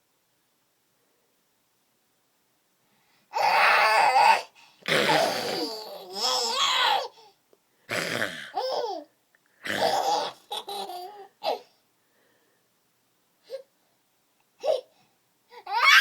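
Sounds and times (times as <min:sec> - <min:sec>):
silly vocal noises: 0:04.9 - 0:06.3.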